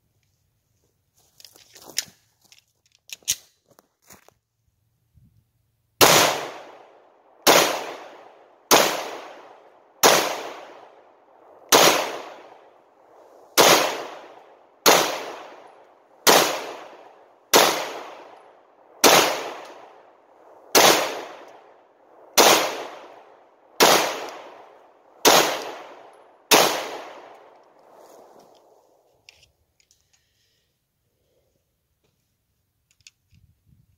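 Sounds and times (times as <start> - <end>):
pistol shots with echo: 6.0 - 12.8, 13.6 - 27.5.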